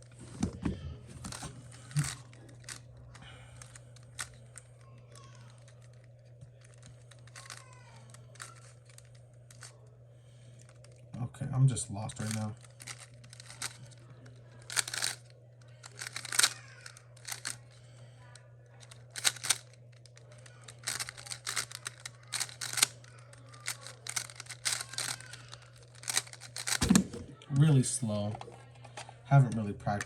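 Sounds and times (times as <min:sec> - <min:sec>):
steady low hum: 0:00.0 - 0:30.0
speed cube clicking: 0:06.6 - 0:09.7, 0:12.2 - 0:13.8, 0:14.6 - 0:15.2, 0:15.8 - 0:17.6, 0:18.8 - 0:19.8, 0:20.4 - 0:26.9.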